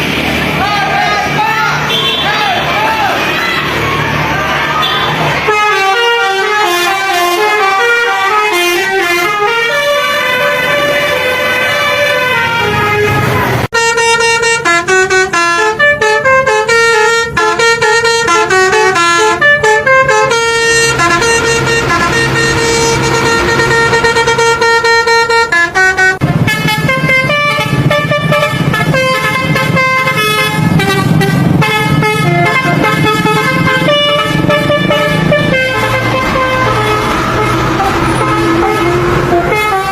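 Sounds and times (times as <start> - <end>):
bus air horn playing tunes: 1.8 - 3.4, 4.8 - 39.9.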